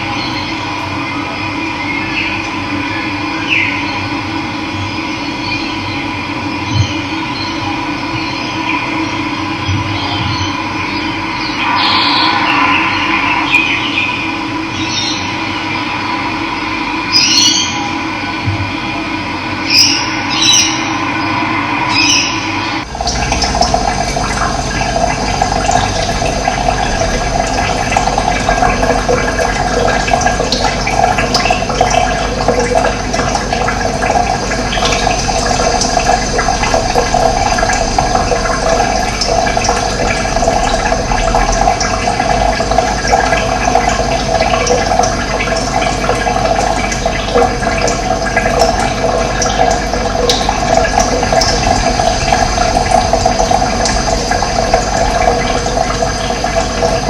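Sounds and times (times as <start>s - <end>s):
faint bird chirps: 9.7s - 15.3s
rushing stream: 11.5s - 15.1s.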